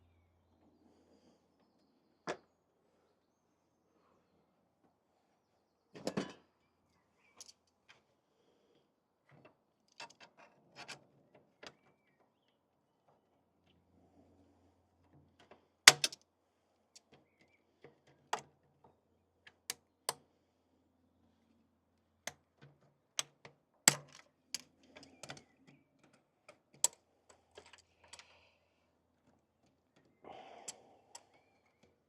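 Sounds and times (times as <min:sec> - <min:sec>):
hand tools clicking and knocking: 0:15.9 - 0:16.2, 0:22.6 - 0:26.2.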